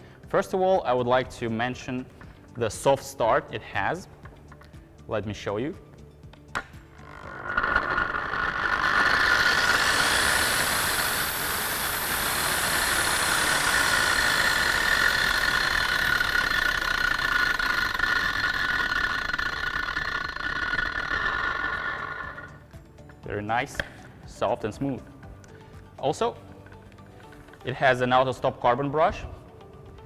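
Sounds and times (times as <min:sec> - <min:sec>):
angle grinder whine: 0:06.0 - 0:24.2.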